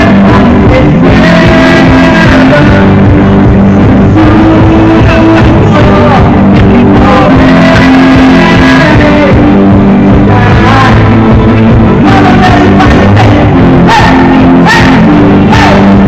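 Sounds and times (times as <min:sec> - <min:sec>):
pop-rock band song: 0:00.0 - 0:16.0.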